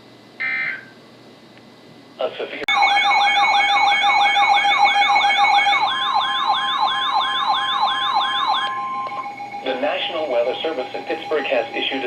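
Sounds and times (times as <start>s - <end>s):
electronic alert siren sweeps: 2.7s - 12.0s
steady alert tones: 2.7s - 12.0s.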